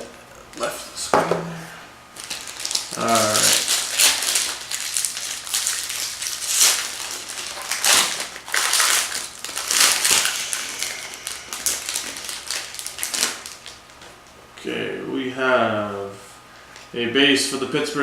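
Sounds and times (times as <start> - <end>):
card packaging crinkling: 2.2 - 14.2.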